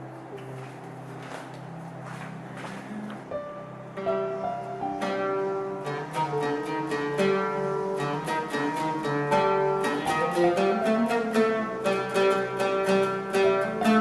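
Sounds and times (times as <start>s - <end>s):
plucked string melody: 2.5s - 14.0s.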